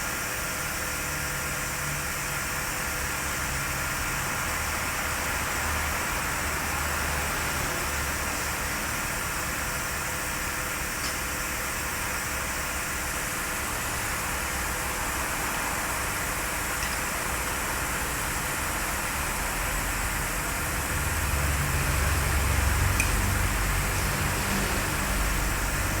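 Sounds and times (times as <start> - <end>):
hiss of fan and air: 0.0 - 26.0.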